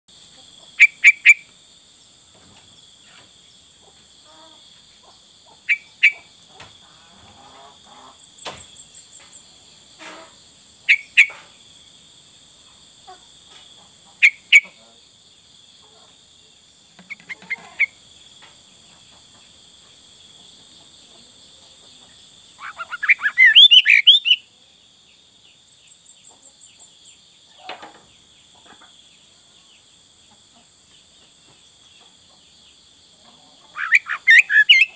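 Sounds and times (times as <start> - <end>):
bird singing: 0.7 - 1.5, 5.6 - 6.4, 10.9 - 11.4, 16.9 - 19.6, 20.2 - 30.0, 33.6 - 34.9.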